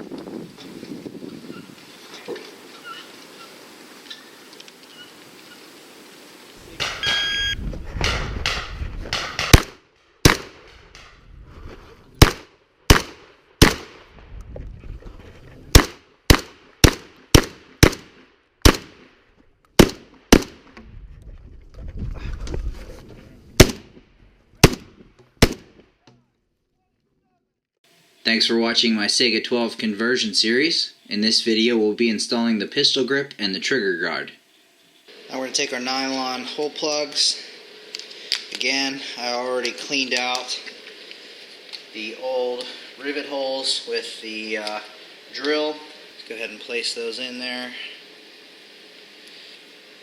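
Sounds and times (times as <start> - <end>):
sharp gunshots: 6.7 - 7.4, 8.0 - 11.0, 12.2 - 14.1, 15.7 - 19.2, 19.8 - 20.8, 23.6 - 24.0, 24.6 - 25.8.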